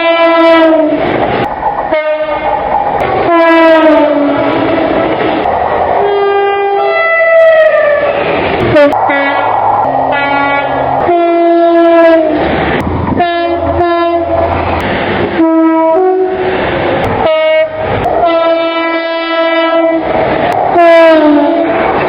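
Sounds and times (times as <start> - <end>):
train horn blasts: 0.0 - 1.0, 1.9 - 2.5, 3.2 - 4.8, 6.0 - 12.4, 13.2 - 14.5, 15.4 - 16.5, 17.2 - 21.8
passing train rumble: 0.0 - 22.0.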